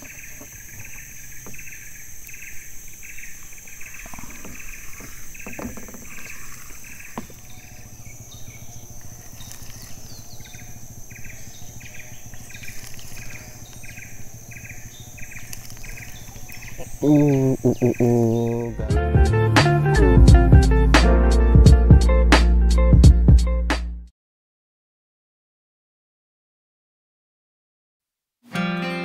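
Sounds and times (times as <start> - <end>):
high-pitched insect drone: 0.0 - 18.9
insects chirping: 0.0 - 18.9.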